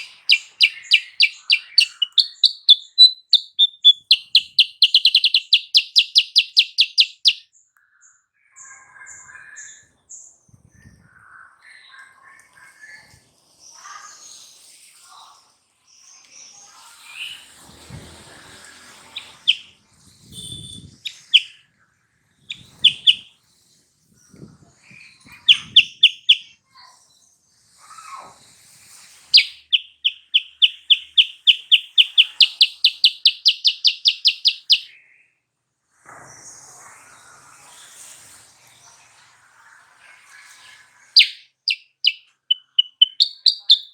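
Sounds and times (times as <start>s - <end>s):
bird chirps: 0.0s - 7.5s, 19.0s - 19.7s, 20.4s - 21.6s, 22.5s - 23.3s, 25.3s - 26.5s, 29.3s - 35.0s, 41.2s - 43.9s
bird singing repeated clear notes: 0.0s - 7.5s, 19.1s - 19.7s, 20.4s - 21.6s, 22.5s - 23.3s, 25.4s - 26.6s, 29.4s - 34.9s, 41.2s - 43.9s.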